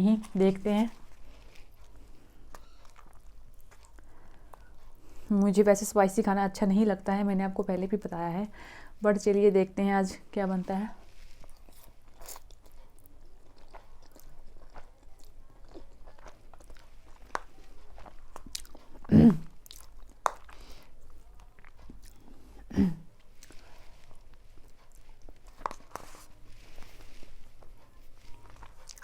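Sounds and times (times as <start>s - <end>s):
chewing with wet clicks and crunches: 0.2s - 5.2s, 11.1s - 29.0s.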